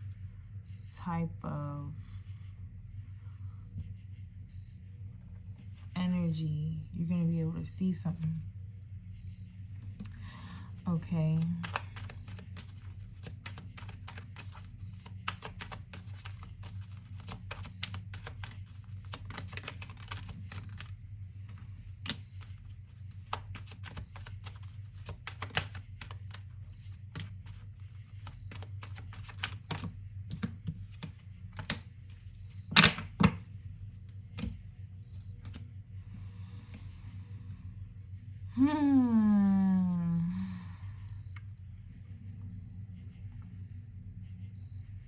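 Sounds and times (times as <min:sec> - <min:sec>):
low hum: 0:00.0 - 0:45.0
cards being shuffled: 0:09.9 - 0:33.4, 0:34.4 - 0:35.7.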